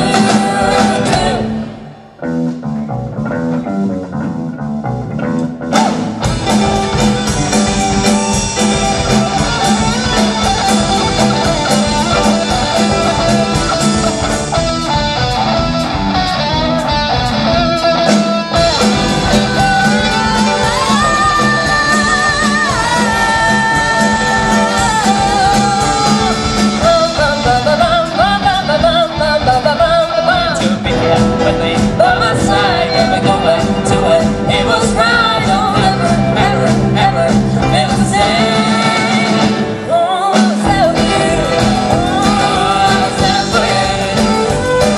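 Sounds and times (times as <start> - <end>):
person singing: 0.0 - 2.1, 16.7 - 44.9
drums beating: 0.0 - 2.6, 5.4 - 44.9
pop-rock band playing: 0.0 - 44.9.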